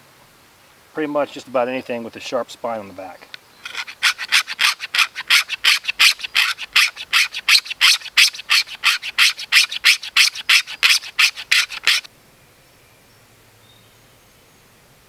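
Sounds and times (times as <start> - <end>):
blade scraping plastic: 3.6 - 12.1.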